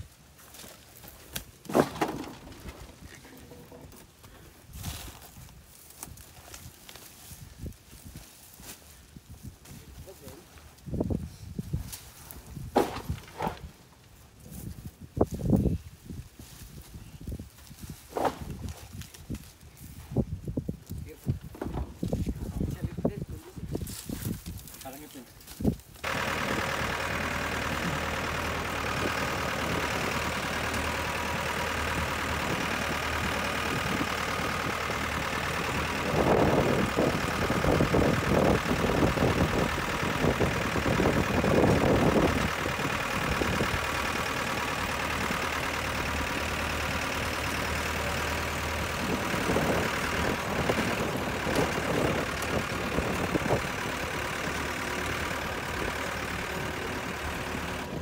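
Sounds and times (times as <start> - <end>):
vehicle engine idling: 0.0 - 6.7, 10.0 - 14.8, 26.0 - 58.0
uneven engine rumbling: 0.0 - 58.0.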